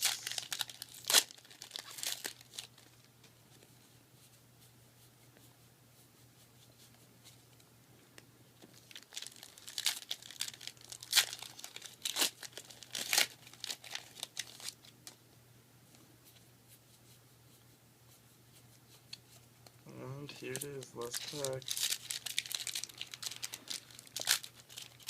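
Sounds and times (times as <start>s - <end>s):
foil wrapper tearing and crinkling: 0.0s - 3.0s, 8.8s - 15.2s, 20.5s - 25.0s.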